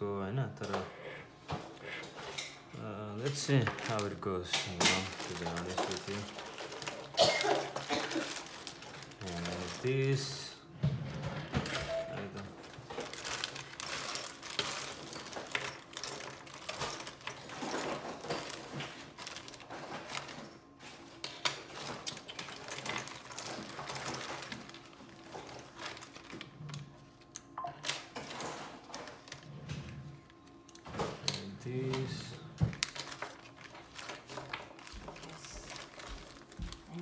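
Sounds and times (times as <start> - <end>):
small tools clicking and rattling: 3.2 - 10.1, 11.6 - 20.6, 21.2 - 29.5.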